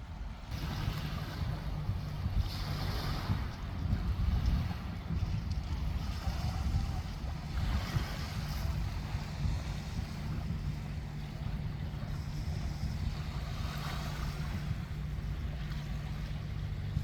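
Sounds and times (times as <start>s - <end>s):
wind buffeting microphone: 0.0s - 17.0s
waves washing over pebbles: 0.5s - 17.0s.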